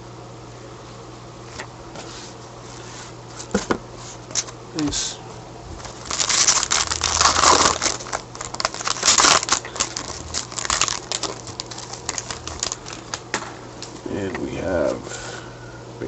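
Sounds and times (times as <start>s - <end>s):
wrapper crinkling as torn open: 5.8s - 14.0s
cards ticking and rustling: 5.8s - 14.5s.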